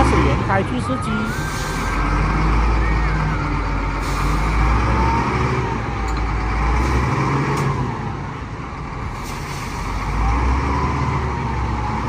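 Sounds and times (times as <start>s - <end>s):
diesel engine rumble: 0.0s - 12.0s.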